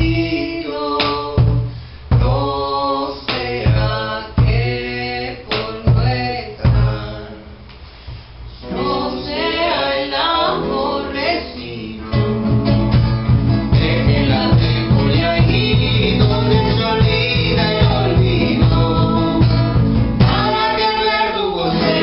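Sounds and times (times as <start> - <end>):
acoustic guitar: 0.0 - 22.0.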